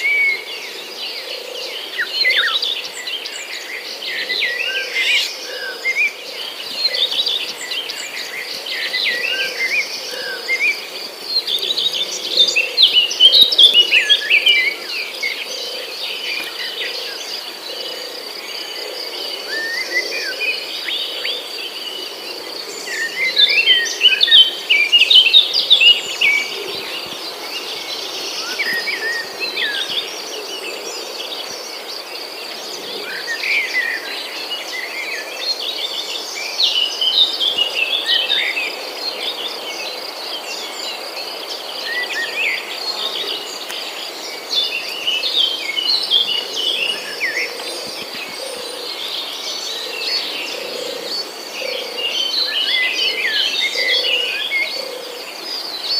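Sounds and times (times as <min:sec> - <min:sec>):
birds chirping and twittering: 0:00.0 - 0:55.9.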